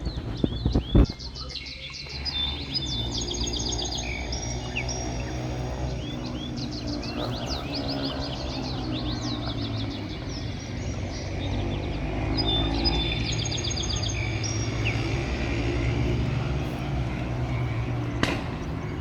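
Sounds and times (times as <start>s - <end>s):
birds chirping: 0.0s - 19.0s
low engine rumble: 0.0s - 19.0s.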